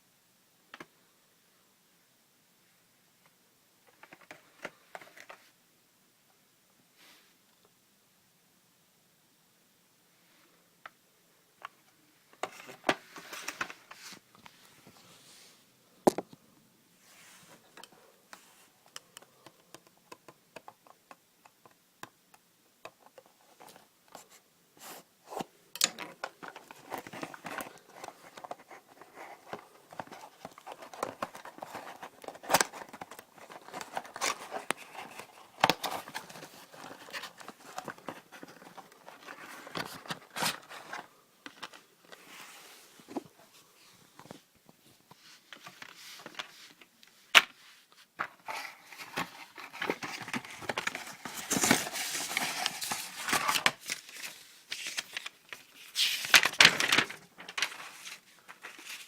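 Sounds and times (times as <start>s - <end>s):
plastic and cardboard rustling: 12.3s - 15.1s, 22.8s - 59.0s.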